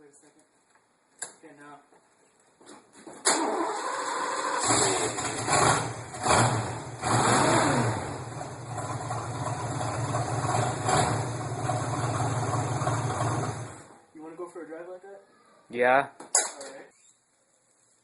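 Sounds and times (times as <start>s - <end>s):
starter motor cranking: 3.3s - 6.5s
car engine revving and idling: 4.6s - 13.9s.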